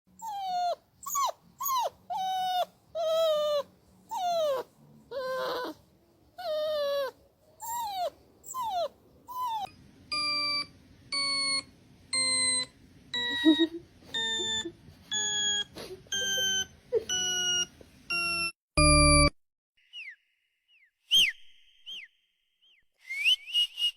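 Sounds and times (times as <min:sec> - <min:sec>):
dog whining: 0:00.1 - 0:05.8, 0:06.4 - 0:10.7.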